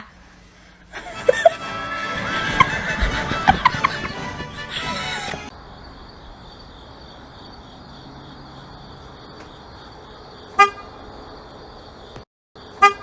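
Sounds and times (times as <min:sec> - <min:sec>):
horn-like toots: 0:01.0 - 0:05.5.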